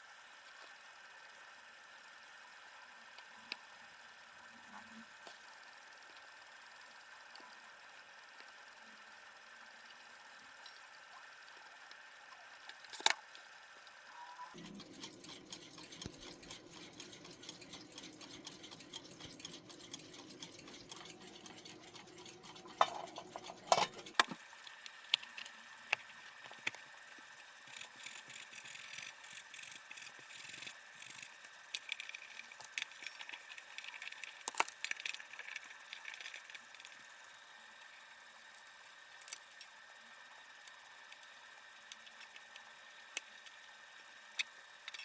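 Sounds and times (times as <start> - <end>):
faint steady hum: 0.0 - 45.0
mechanical clicking and rattling: 14.5 - 26.8, 27.4 - 45.0.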